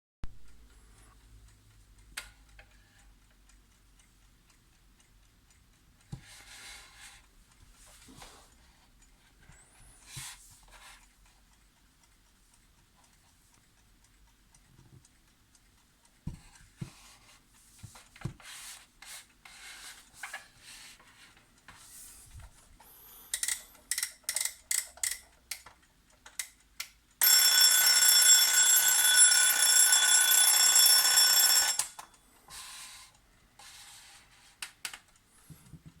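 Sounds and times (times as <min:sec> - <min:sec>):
scattered clicks and light knocks: 0:10.5 - 0:27.2, 0:34.6 - 0:36.0
alarm clock bell ringing: 0:27.2 - 0:33.1.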